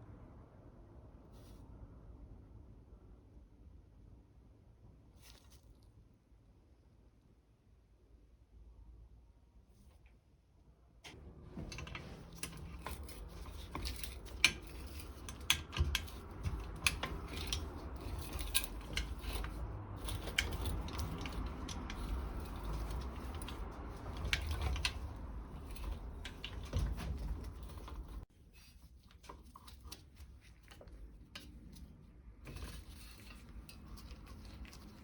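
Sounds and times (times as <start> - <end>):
metal hand tools clattering: 11.6 - 28.2.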